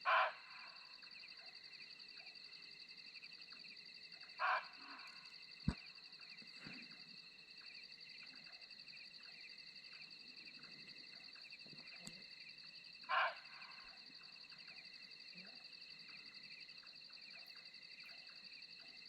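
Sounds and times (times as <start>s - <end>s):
wild animal call: 0.0s - 2.4s, 3.5s - 7.2s, 13.0s - 16.4s
insects trilling in fast pulses: 0.0s - 19.0s.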